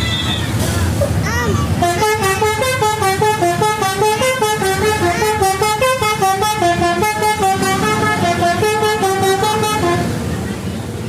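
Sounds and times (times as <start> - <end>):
low engine rumble: 0.0 - 11.0
musical air horn melody: 1.8 - 10.1.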